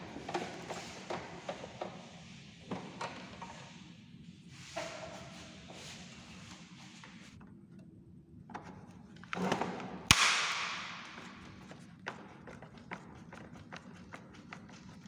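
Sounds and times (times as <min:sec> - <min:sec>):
sharp snap: 0:10.1 - 0:11.0.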